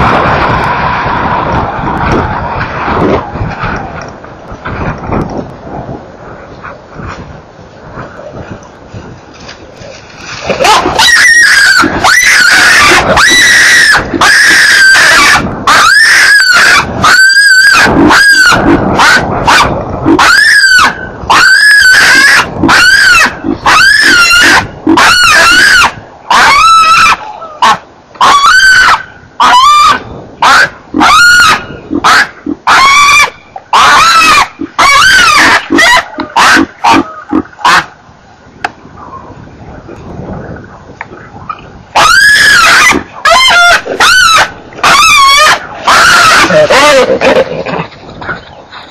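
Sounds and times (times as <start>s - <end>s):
baby baboon squealing: 10.6s - 37.9s, 42.0s - 47.6s.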